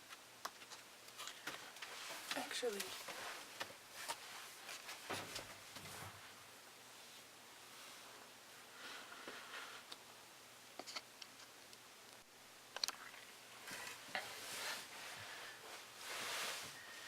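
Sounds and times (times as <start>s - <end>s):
paper rustling and sliding: 13.7s - 17.0s.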